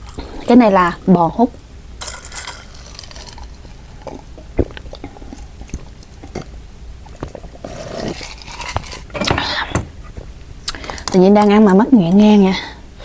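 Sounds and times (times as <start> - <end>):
person chewing food: 2.0 - 11.0.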